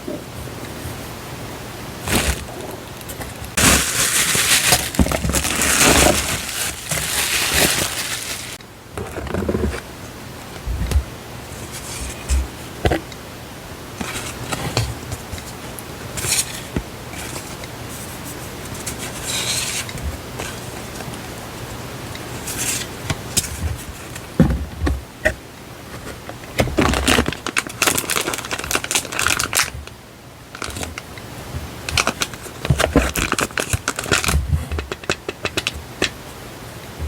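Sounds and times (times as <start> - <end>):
paper packaging rustling: 2.0 - 9.9, 14.0 - 21.3, 22.1 - 25.0, 25.9 - 30.0, 31.8 - 36.1.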